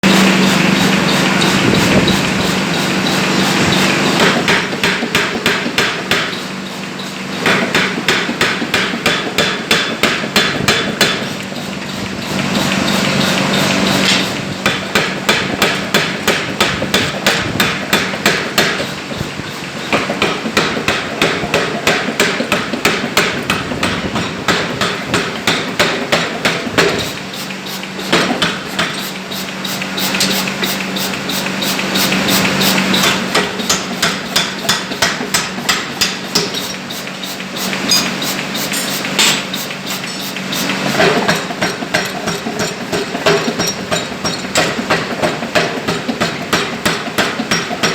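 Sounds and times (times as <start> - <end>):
steady hum: 0.0 - 43.3
power hammer striking metal: 0.0 - 47.9.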